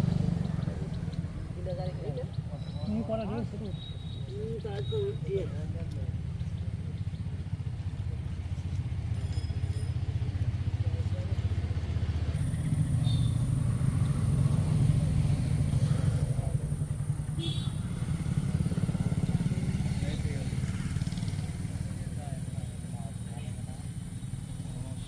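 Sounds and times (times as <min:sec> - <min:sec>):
engine low pulsing rumble: 0:04.3 - 0:20.4.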